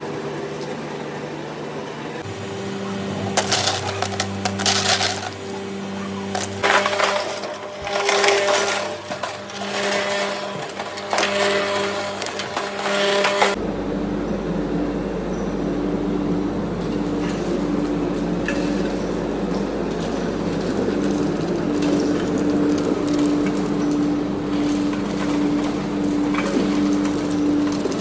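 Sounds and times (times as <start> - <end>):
ice machine humming: 0.0 - 28.0
ice cubes clattering: 2.3 - 13.6, 16.9 - 28.0.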